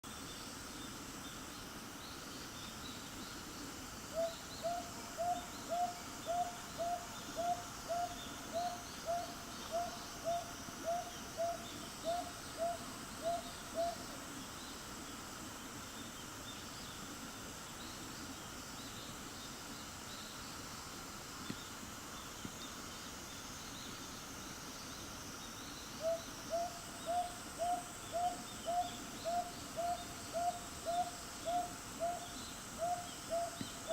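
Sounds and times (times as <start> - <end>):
insect chorus: 0.0 - 33.9
owl hooting: 4.1 - 14.1, 26.0 - 33.9.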